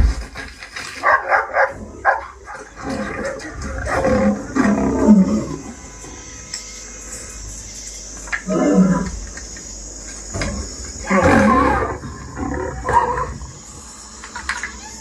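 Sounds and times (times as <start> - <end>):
animal growling and roaring: 1.7 - 5.8, 8.4 - 9.2, 10.4 - 13.7.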